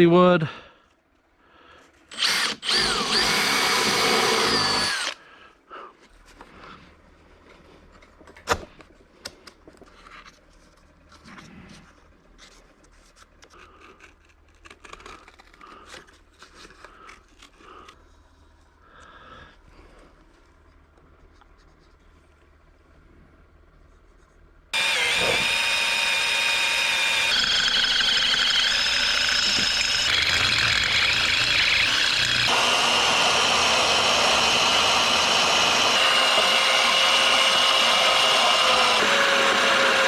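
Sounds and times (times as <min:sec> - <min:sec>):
power drill whining: 0:02.1 - 0:05.2, 0:24.8 - 0:40.0.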